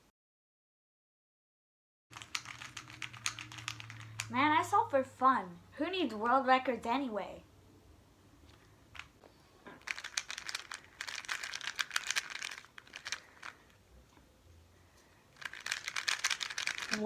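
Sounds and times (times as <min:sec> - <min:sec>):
rubik's cube clicking: 0:02.2 - 0:04.3, 0:09.8 - 0:13.6, 0:15.4 - 0:17.0.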